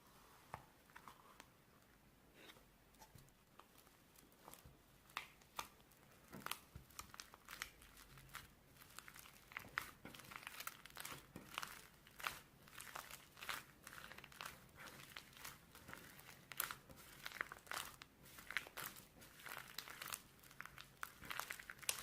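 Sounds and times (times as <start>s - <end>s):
slime crackling and popping: 3.6s - 22.0s.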